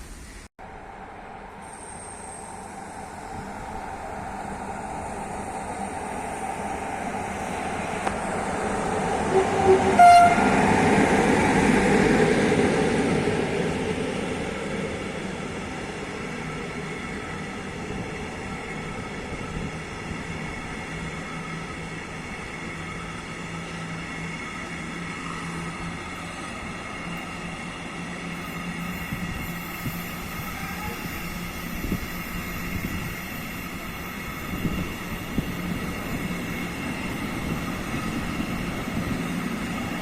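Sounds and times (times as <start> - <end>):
train passing: 0.0 - 40.0
train horn toot: 9.3 - 10.6.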